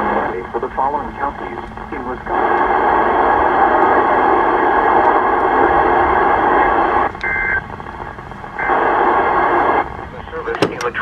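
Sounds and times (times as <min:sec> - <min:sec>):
radio static: 0:00.0 - 0:11.0
two-tone data burst: 0:07.1 - 0:07.7.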